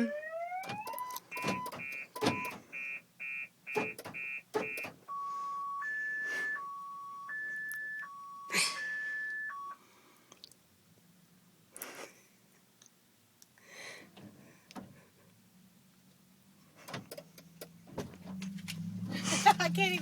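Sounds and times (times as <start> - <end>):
car alarm beeping and wailing: 0.0 - 9.8.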